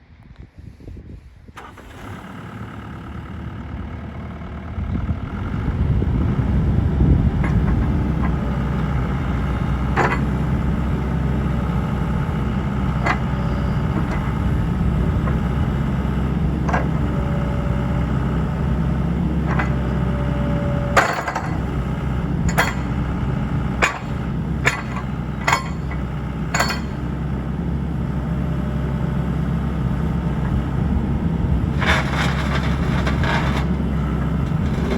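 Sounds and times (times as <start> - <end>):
excavator diesel engine running: 1.5 - 34.9
metal knocks and clanks: 7.3 - 10.5, 20.9 - 21.7, 22.5 - 23.1, 23.8 - 27.1, 31.7 - 34.9.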